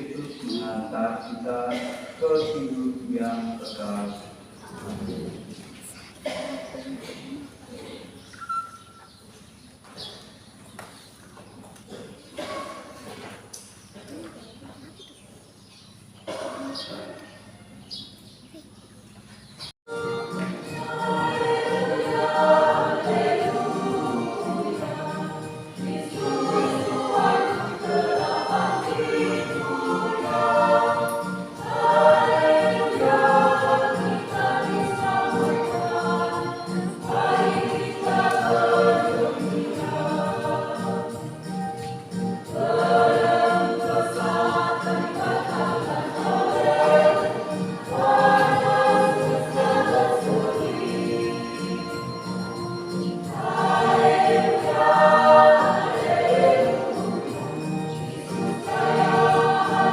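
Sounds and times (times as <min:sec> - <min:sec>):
choir singing a hymn: 0:00.0 - 0:05.5, 0:19.9 - 0:59.9
steady-beat accompaniment: 0:19.9 - 0:59.9.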